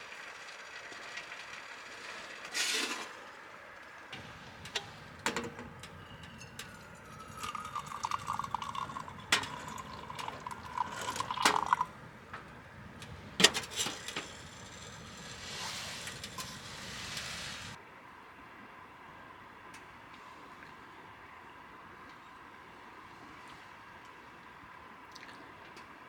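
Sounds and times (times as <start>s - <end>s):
metal cookware clinking: 4.2s - 15.4s
liquid pouring into a cup: 4.2s - 16.8s
hiss: 12.5s - 17.8s.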